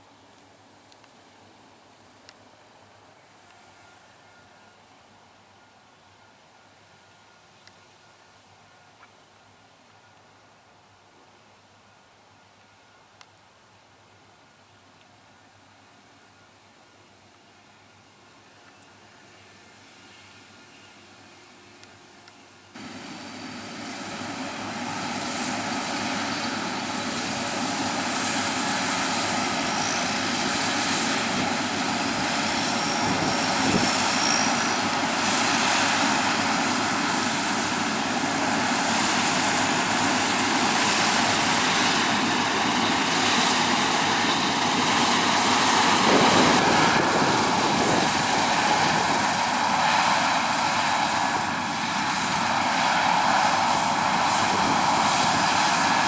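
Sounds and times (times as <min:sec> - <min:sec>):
diesel farm machinery droning: 0:22.8 - 0:56.0.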